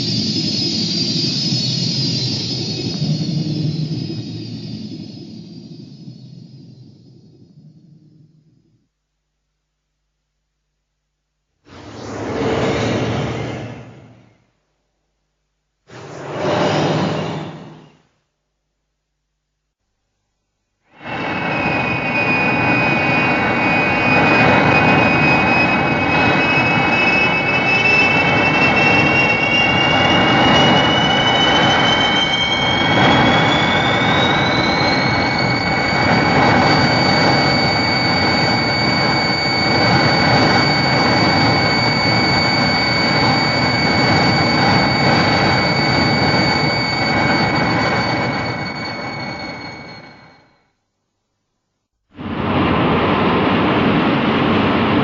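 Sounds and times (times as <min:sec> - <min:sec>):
high whine rising in pitch: 0:00.0 - 0:09.0, 0:11.7 - 0:14.4, 0:21.0 - 0:50.7, 0:52.2 - 0:55.0
monster rushing roar: 0:11.7 - 0:14.3.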